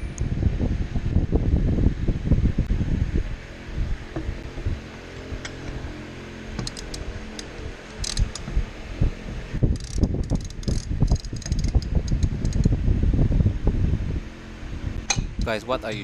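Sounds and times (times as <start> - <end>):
steady low hum: 0.0 - 16.0
ratchet wrench clicking: 6.6 - 8.5, 9.7 - 12.7.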